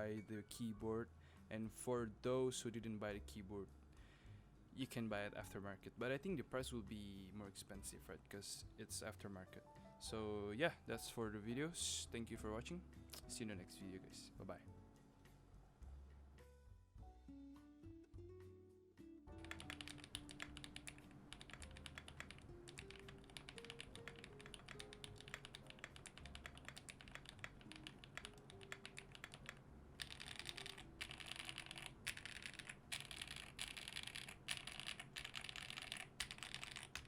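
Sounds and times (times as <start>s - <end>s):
background music: 0.0s - 37.0s
mechanical keyboard typing: 19.4s - 37.0s.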